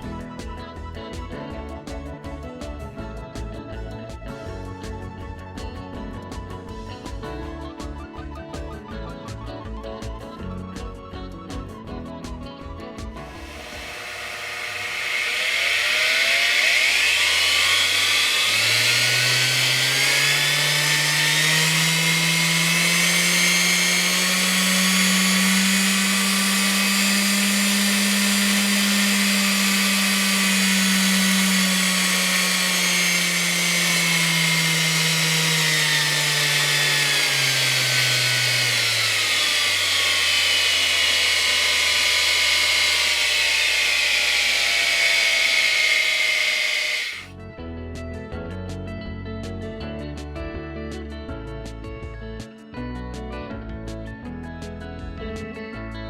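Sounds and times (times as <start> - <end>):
electric tool motor speeding up: 0.0 - 0.4, 13.1 - 47.3.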